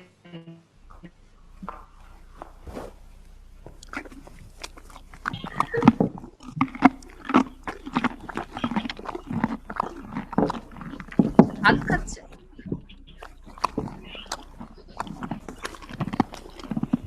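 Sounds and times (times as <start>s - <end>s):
horse chewing carrots: 0.8s - 17.0s.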